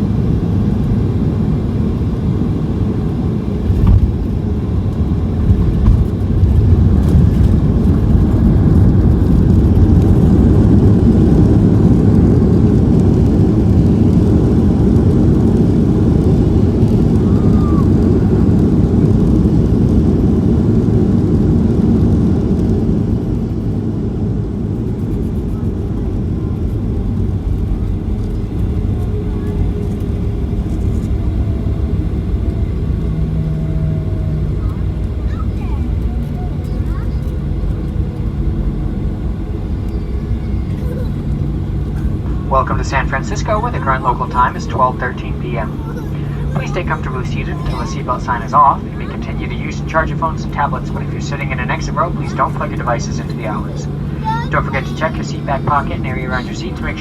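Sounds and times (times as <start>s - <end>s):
jet engines rumble: 0.0s - 57.0s
reverse thrust roar: 41.5s - 57.0s.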